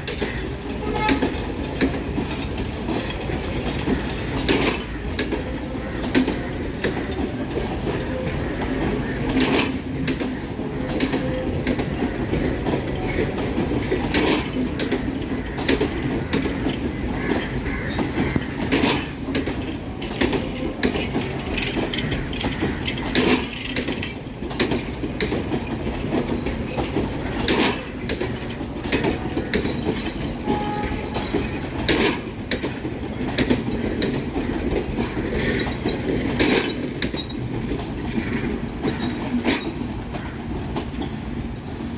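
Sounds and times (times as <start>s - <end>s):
train rumbling on rails: 0.0s - 41.9s
wheels clicking over rail joints: 0.0s - 41.9s.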